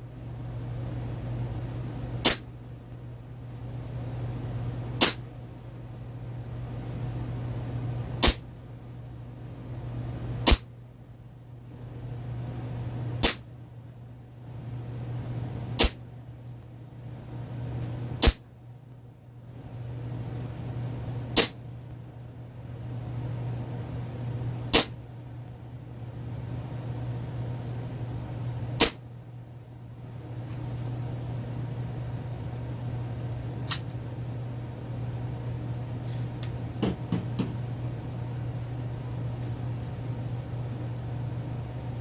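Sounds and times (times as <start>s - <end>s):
steady low hum: 0.0s - 42.0s
airsoft pistol shots: 2.2s - 2.5s, 5.0s - 5.3s, 8.2s - 8.4s, 10.4s - 10.7s, 13.2s - 13.5s, 15.8s - 16.0s, 18.2s - 18.4s, 21.4s - 21.6s, 24.7s - 25.0s, 28.8s - 29.0s.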